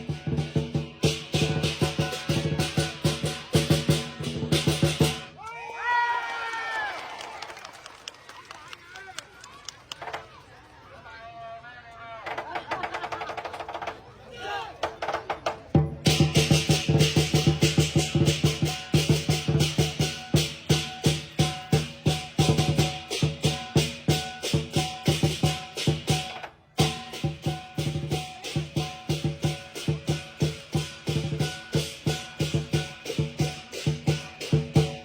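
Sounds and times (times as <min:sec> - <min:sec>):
large drum beating fast rhythm: 0:00.0 - 0:05.3, 0:15.7 - 0:35.0.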